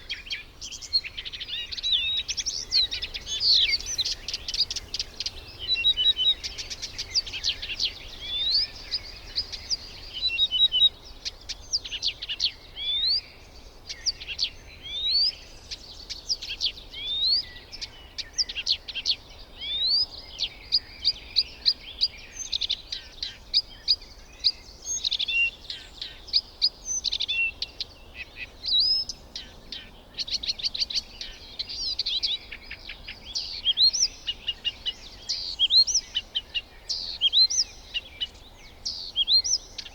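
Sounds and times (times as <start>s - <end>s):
birds chirping and calling: 0.7s - 10.9s.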